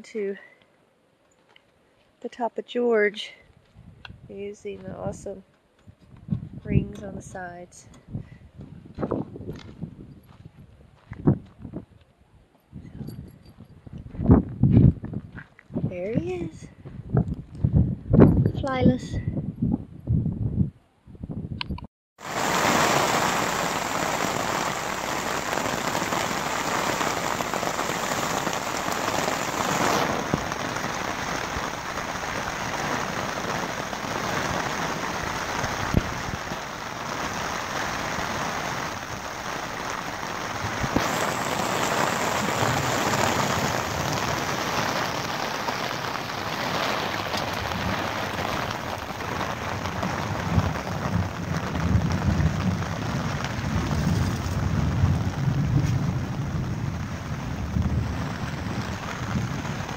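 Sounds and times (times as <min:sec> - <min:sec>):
rain on tent fabric: 0:22.2 - 0:59.9.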